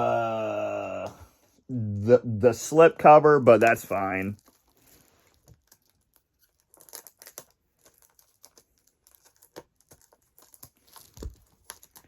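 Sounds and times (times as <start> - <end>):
packaging crinkling and rustling: 3.6 - 12.0.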